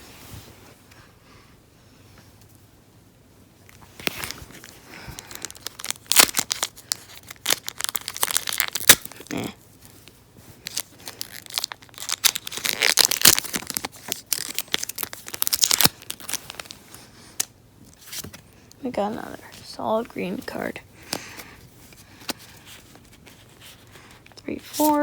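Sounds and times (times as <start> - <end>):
foil wrapper crinkling: 3.7 - 18.8, 21.0 - 25.0.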